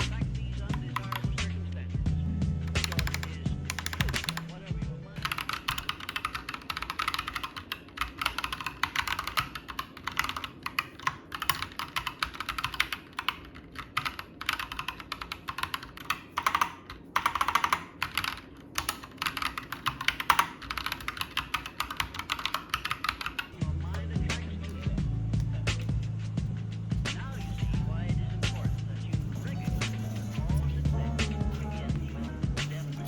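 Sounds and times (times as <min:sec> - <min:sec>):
mechanical keyboard typing: 0:00.7 - 0:01.5, 0:02.7 - 0:25.0.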